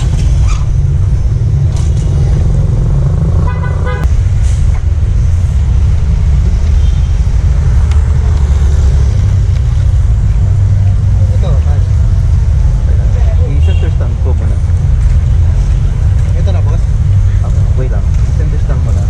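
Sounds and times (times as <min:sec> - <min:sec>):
road traffic rumble: 0:00.0 - 0:19.0
vehicle horn: 0:03.4 - 0:04.1, 0:13.6 - 0:14.0.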